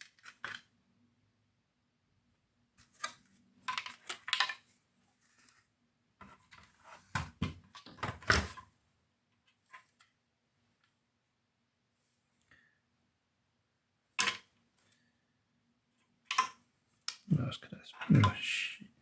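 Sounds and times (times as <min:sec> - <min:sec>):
plastic parts clattering: 0:02.9 - 0:04.6.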